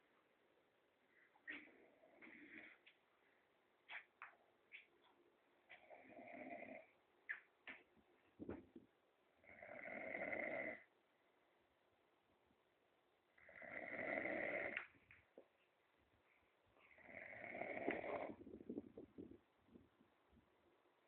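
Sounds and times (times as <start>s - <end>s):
man snoring: 5.9s - 6.9s, 9.4s - 10.9s, 13.4s - 14.8s, 17.0s - 18.4s.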